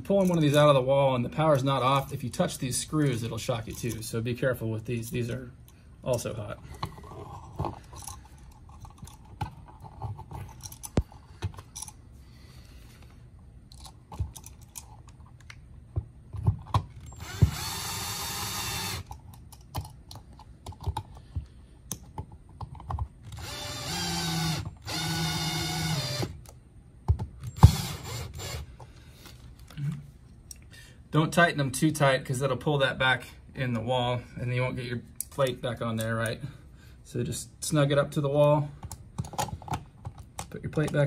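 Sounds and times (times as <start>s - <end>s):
handling clicks and knocks: 0.0s - 0.6s, 3.0s - 4.2s, 5.0s - 12.0s, 13.6s - 17.2s, 19.0s - 23.4s, 38.4s - 41.0s
power drill driving screws: 17.0s - 19.1s, 23.3s - 26.4s, 27.5s - 28.7s.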